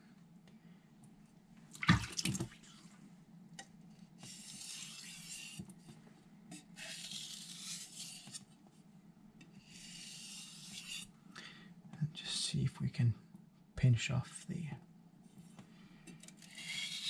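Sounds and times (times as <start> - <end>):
knife scraping on whetstone: 4.2 - 5.7, 6.5 - 8.5, 9.6 - 11.1, 16.3 - 17.0.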